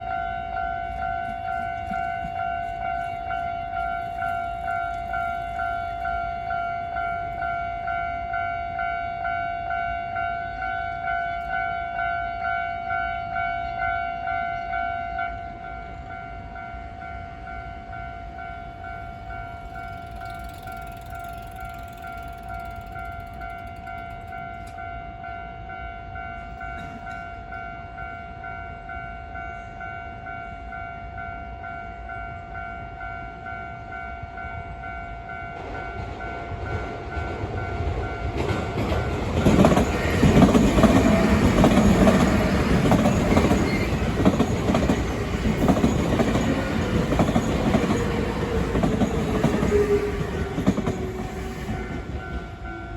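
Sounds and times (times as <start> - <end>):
level-crossing warning bell: 0.0 - 52.9
electric train clattering: 0.9 - 7.6, 18.3 - 24.9, 26.4 - 27.5, 35.3 - 52.9.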